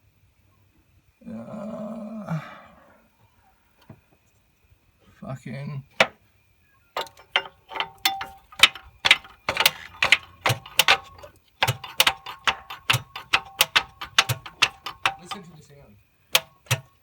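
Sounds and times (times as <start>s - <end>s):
hammer tapping on metal: 7.0s - 15.6s, 16.4s - 17.0s.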